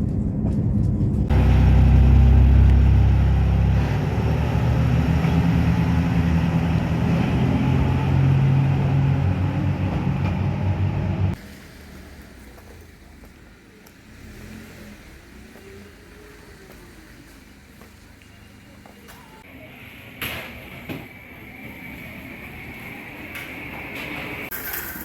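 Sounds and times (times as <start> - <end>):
vehicle engine rumbling: 0.0 - 20.0.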